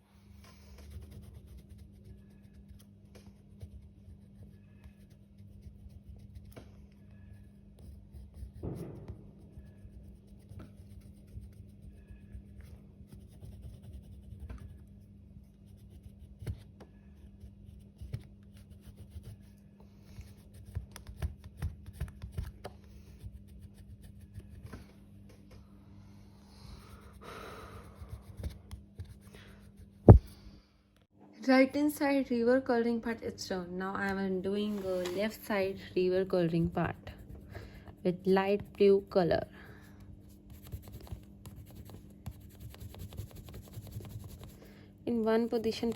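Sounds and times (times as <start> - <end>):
pencil scratching on paper: 0.4 - 22.6, 23.2 - 24.7, 40.3 - 45.9
steady low hum: 22.6 - 45.9
paper rustling: 34.6 - 35.6.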